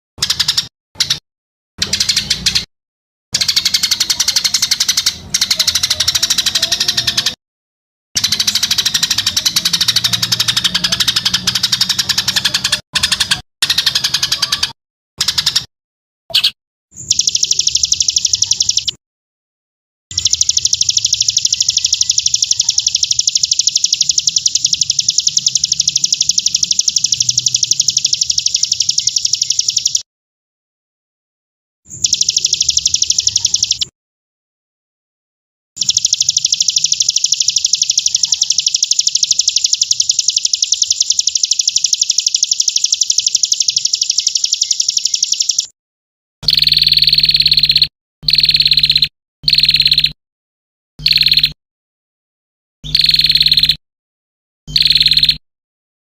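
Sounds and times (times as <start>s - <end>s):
bird's rapid high-pitched trill: 0.2s - 1.2s, 1.8s - 2.7s, 3.4s - 7.4s, 8.2s - 15.7s, 16.3s - 19.0s, 20.1s - 30.1s, 31.9s - 33.9s, 35.8s - 45.8s, 46.4s - 50.2s, 51.0s - 51.6s, 52.8s - 53.8s, 54.7s - 55.4s.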